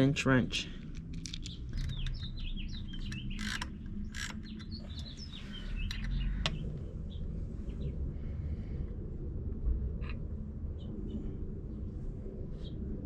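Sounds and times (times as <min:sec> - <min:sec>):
low steady rumble: 0:00.0 - 0:13.0
small birds chirping: 0:00.8 - 0:08.0
sharp clicks: 0:00.9 - 0:06.6.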